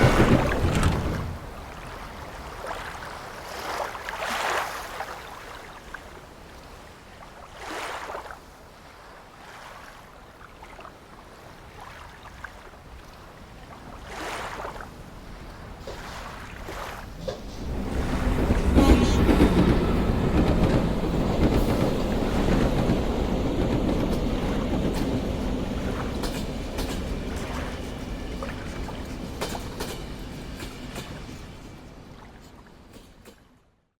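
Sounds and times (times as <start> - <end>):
surf rushing: 0.0 - 2.2, 15.9 - 29.2
wind: 0.0 - 34.0.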